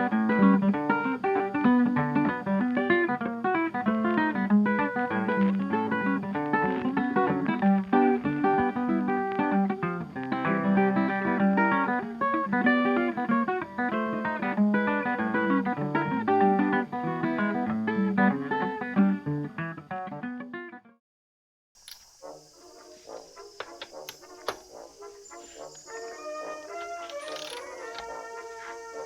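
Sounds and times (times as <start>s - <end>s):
plucked acoustic guitar: 0.0s - 20.8s.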